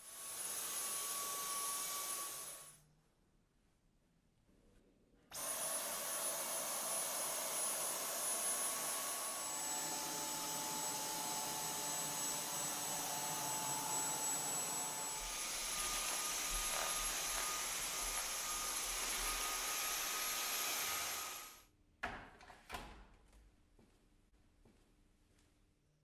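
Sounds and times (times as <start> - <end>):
cordless vacuum whining: 5.4 - 21.5.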